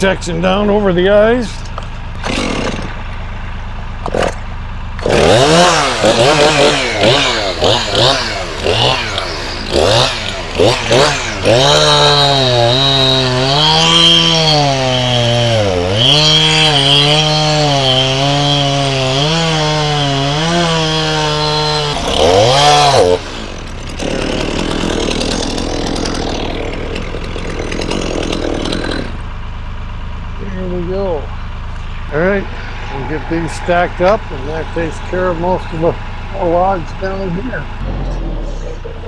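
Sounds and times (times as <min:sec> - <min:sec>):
chainsaw cutting through log: 0:01.4 - 0:29.3.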